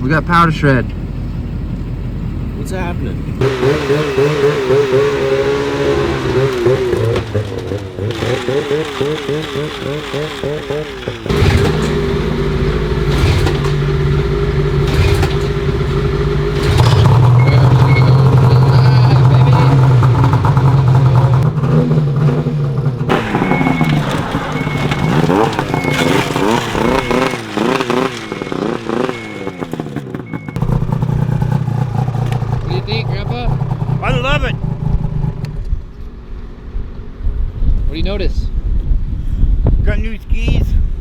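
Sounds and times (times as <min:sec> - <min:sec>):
snowmobile engine revving: 0:02.7 - 0:35.5
short beeps: 0:16.8 - 0:19.3, 0:23.2 - 0:30.8.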